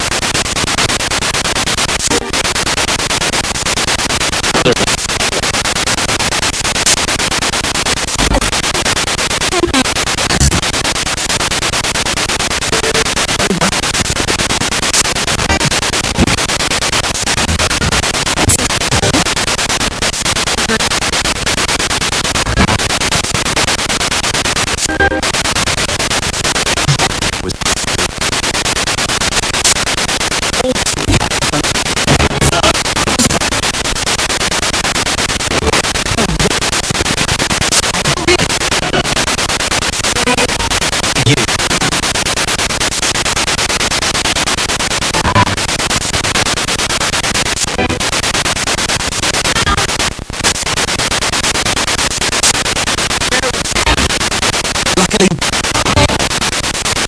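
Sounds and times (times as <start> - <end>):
radio static: 0.0 - 57.0
broadcast voice fragments: 2.0 - 2.5, 4.6 - 5.2, 9.5 - 10.7, 15.0 - 19.4, 30.5 - 33.6, 35.5 - 39.2, 40.1 - 42.0, 53.3 - 56.3.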